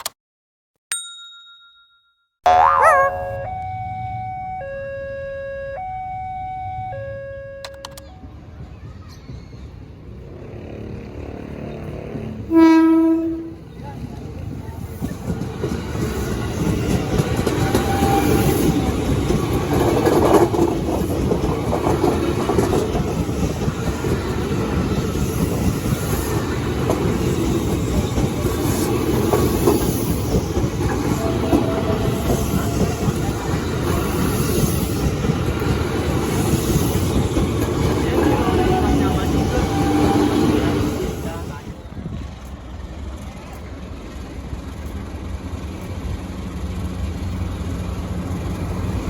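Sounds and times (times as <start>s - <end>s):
train wheels on rails: 13.4s - 49.0s.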